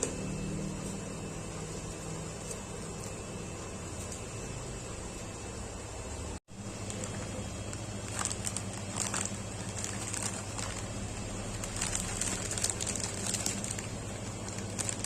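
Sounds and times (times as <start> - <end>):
steady low hum: 0.0 - 15.0
plastic packaging crinkling: 6.6 - 15.0.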